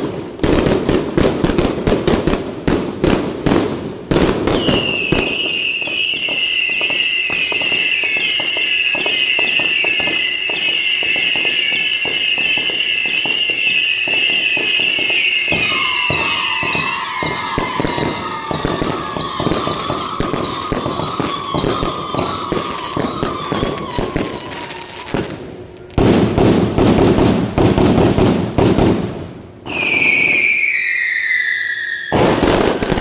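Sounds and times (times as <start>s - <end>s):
fireworks crackling: 0.0s - 33.0s
lower whistle: 4.5s - 25.3s, 29.7s - 33.0s
high-pitched whistle: 4.6s - 25.2s, 29.7s - 33.0s.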